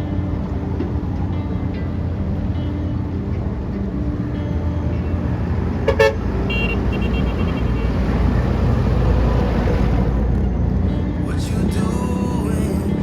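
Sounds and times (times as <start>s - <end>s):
road traffic and engine rumble: 0.0s - 13.0s
vehicle horn toot: 5.8s - 8.2s.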